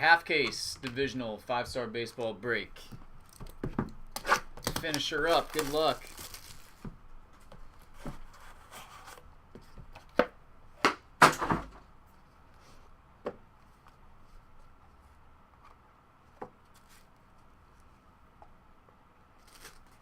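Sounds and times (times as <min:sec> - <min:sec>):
cardboard taps and knocks: 0:03.4 - 0:04.0
light rustling of packs: 0:04.7 - 0:08.0, 0:19.4 - 0:20.0.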